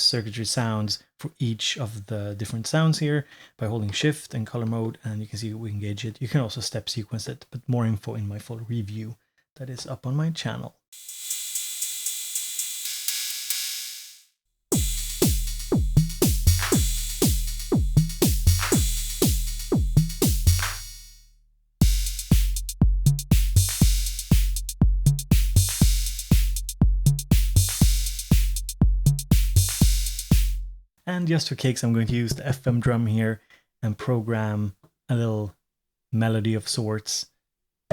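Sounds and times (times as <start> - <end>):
cymbal-like hiss: 11.0 - 14.2, 14.8 - 21.2
drum machine beat: 14.7 - 21.1, 21.8 - 30.8.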